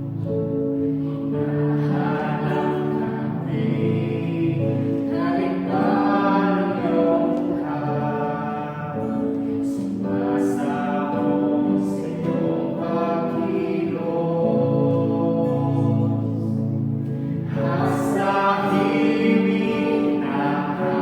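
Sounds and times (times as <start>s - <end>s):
group singing praise song: 0.0s - 21.0s.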